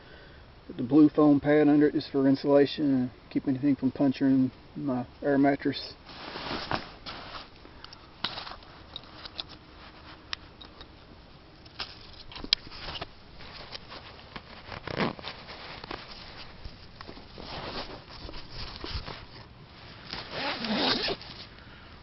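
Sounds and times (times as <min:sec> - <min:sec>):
fabric rustling: 0:06.1 - 0:07.6, 0:08.2 - 0:10.3, 0:11.7 - 0:21.5.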